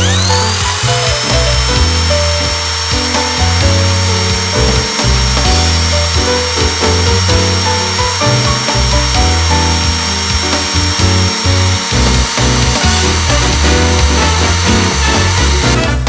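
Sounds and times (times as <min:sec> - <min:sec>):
background music with steady beat: 0:00.0 - 0:16.0
electric motor whining: 0:00.0 - 0:16.0.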